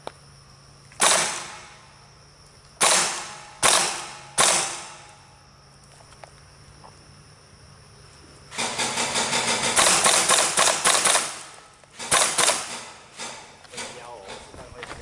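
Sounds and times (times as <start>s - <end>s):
airsoft gun shots: 1.0s - 1.8s, 2.8s - 5.2s, 8.5s - 13.5s.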